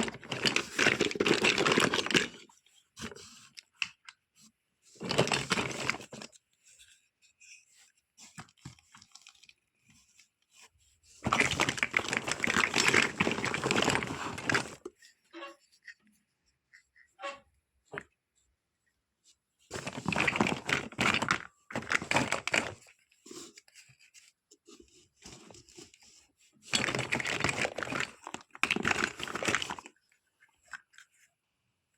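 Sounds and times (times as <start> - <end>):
plastic packaging crinkling: 0.0 - 2.5, 11.2 - 14.9, 19.7 - 22.9, 26.7 - 29.9.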